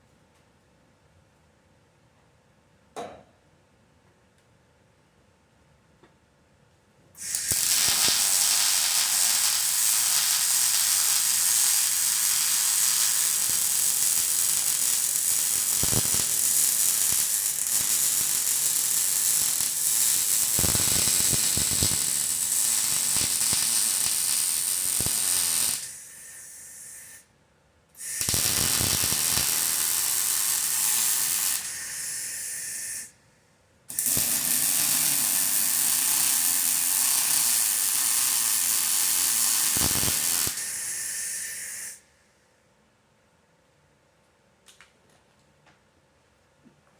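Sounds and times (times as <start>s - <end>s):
welding arc sizzling and crackling: 7.2s - 27.2s, 28.0s - 33.1s, 33.9s - 42.0s.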